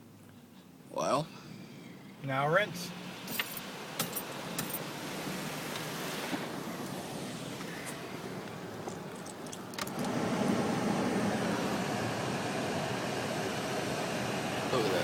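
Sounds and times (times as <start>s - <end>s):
water spraying onto a car: 3.0s - 9.8s.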